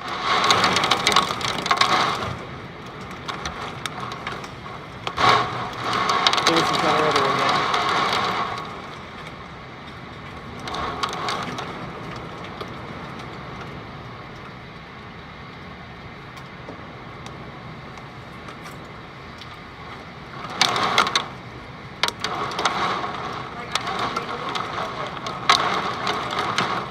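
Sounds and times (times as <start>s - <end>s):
hail striking glass windows: 0.0s - 14.6s, 19.4s - 26.9s
storm noise: 0.0s - 26.9s.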